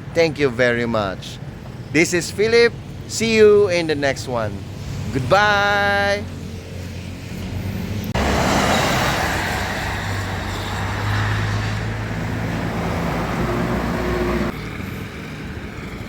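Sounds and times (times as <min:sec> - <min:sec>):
tyre and road noise: 0:00.0 - 0:16.0
low engine hum: 0:06.4 - 0:16.0.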